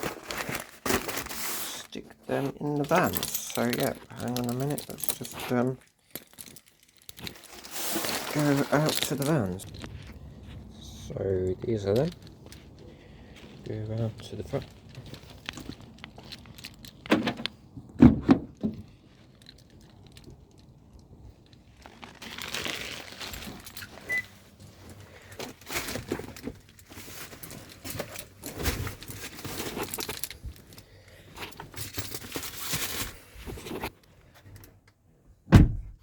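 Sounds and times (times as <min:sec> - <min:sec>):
rustling handling noise: 0:00.0 - 0:17.8, 0:18.8 - 0:34.8
keys jangling: 0:02.7 - 0:07.5.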